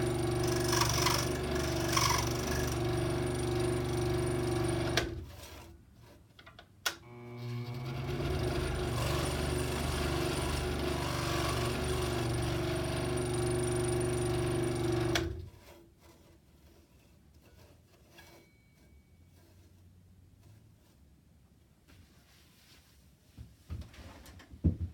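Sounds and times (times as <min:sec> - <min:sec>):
scroll saw motor running: 0:00.0 - 0:05.2, 0:07.1 - 0:15.4.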